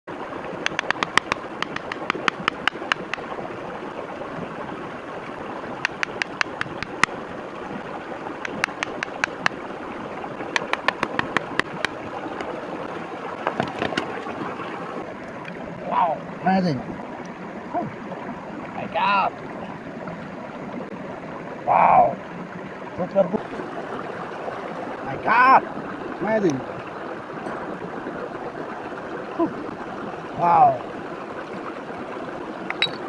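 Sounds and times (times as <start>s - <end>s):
sharp clicking taps: 0.6s - 3.3s, 5.8s - 7.2s, 8.4s - 9.6s, 10.5s - 12.5s.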